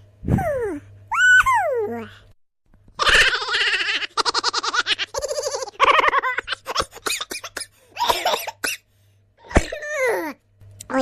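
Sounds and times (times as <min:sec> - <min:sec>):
wobbling trilling voice effect: 0:00.3 - 0:02.2.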